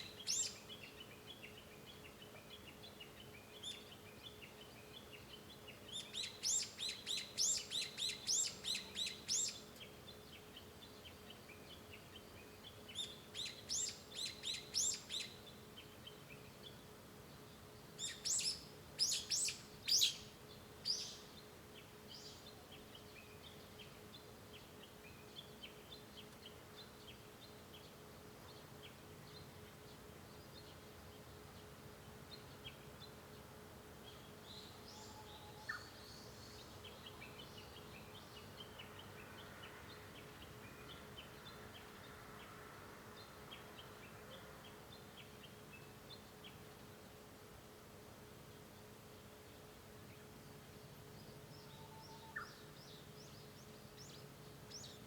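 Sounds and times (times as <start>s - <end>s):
faint bird chirps: 0.0s - 31.6s, 34.0s - 42.6s, 50.0s - 55.0s
faint steady hum: 0.0s - 55.0s.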